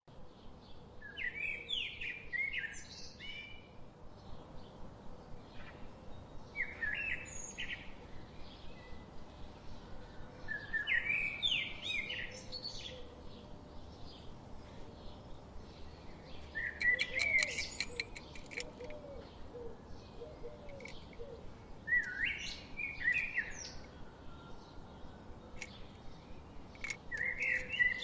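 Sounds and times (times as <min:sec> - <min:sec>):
songbird chirping: 0:00.1 - 0:28.0.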